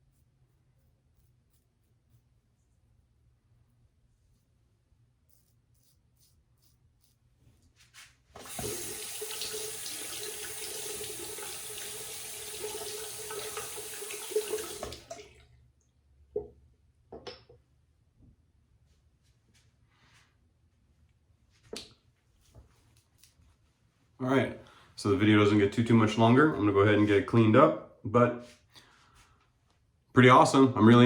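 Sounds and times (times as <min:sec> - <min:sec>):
tap running into sink: 0:08.4 - 0:15.2.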